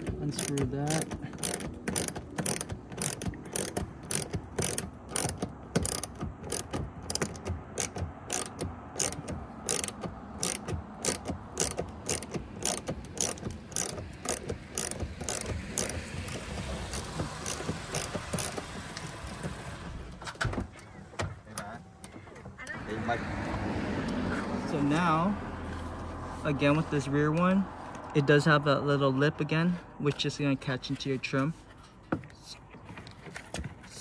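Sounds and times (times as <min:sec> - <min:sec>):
ratcheting wrench clicking: 0:00.0 - 0:19.5.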